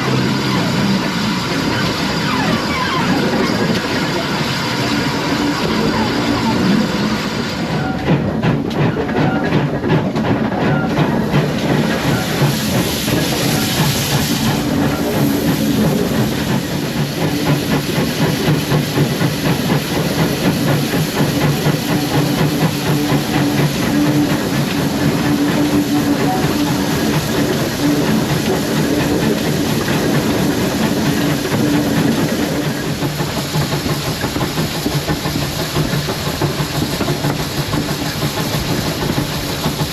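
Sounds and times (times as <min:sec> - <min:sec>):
clickety-clack from rails: 0:00.0 - 0:39.9
train wheels rumbling on track: 0:00.0 - 0:39.9
steam hiss: 0:11.2 - 0:39.9.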